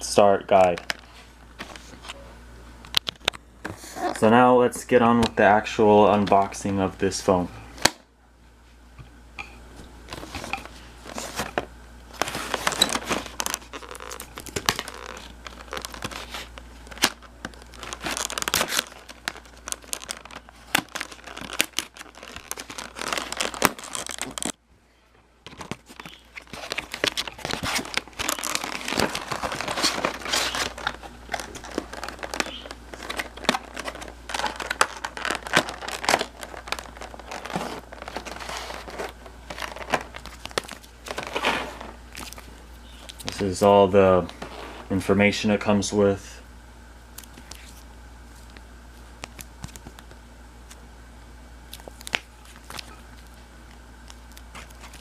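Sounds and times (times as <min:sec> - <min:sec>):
packaging crinkling and rustling: 0:10.1 - 0:24.6, 0:25.4 - 0:45.0, 0:47.2 - 0:50.8, 0:51.7 - 0:55.0
packaging tearing: 0:12.2 - 0:24.6, 0:25.5 - 0:43.4, 0:54.0 - 0:55.0.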